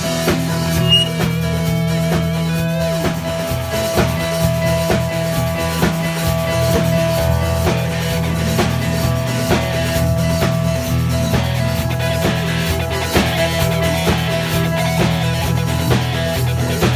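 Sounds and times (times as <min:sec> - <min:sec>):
drum kit steady beat: 0:00.0 - 0:16.9
held bass and guitar notes: 0:00.0 - 0:16.9
live band music: 0:00.0 - 0:16.9.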